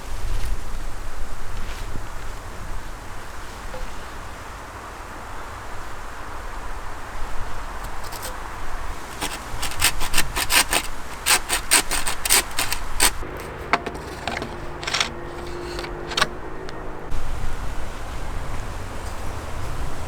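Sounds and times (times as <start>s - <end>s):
rasping strokes on wood: 7.9s - 16.3s
scattered clicks: 9.1s - 16.4s.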